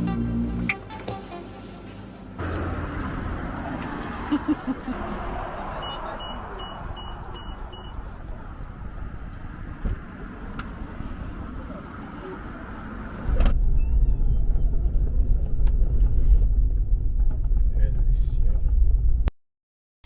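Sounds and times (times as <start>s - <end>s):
car road and engine hiss: 0.0s - 13.6s
short high beeps: 5.8s - 8.0s.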